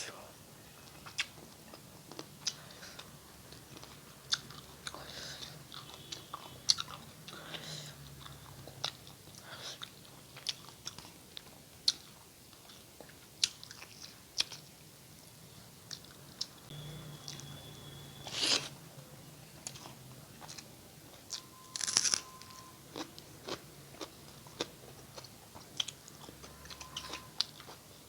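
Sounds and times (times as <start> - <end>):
person chewing food: 0.8 - 14.7, 19.6 - 28.0.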